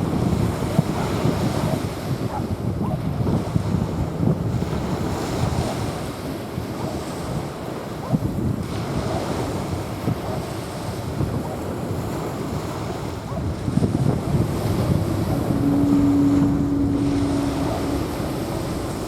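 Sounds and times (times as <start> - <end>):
waves washing onto beach: 0.0 - 19.0
wind buffeting microphone: 0.0 - 19.0
steady low hum: 14.1 - 19.0.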